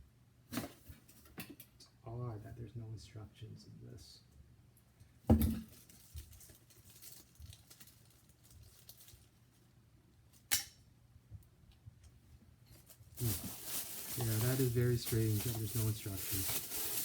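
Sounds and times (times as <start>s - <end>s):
faint low hum: 0.0s - 17.0s
packaging rustling: 5.7s - 9.4s, 12.8s - 17.0s.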